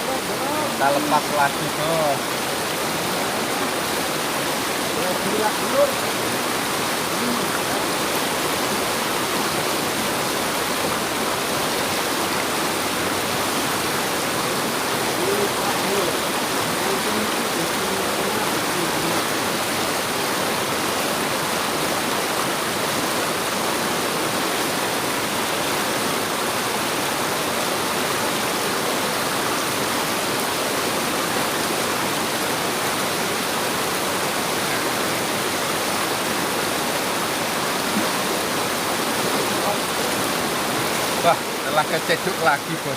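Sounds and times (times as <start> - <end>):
river water rushing: 0.0 - 42.9.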